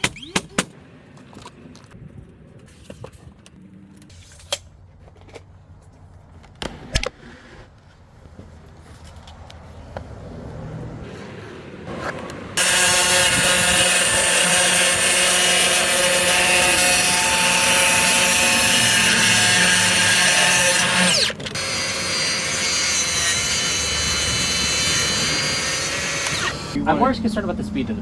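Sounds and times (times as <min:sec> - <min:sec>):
power saw cutting wood: 0:12.6 - 0:26.8.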